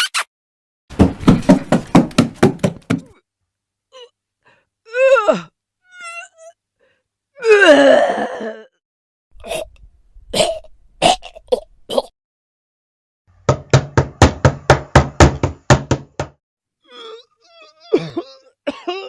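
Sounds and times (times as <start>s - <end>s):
sharp knocks: 0.9s - 3.1s
person coughing: 17.9s - 19.0s.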